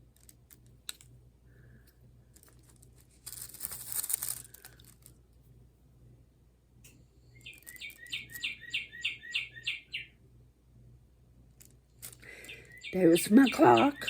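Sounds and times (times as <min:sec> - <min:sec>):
clock playing bird song trill: 0:07.4 - 0:10.2, 0:12.3 - 0:14.0.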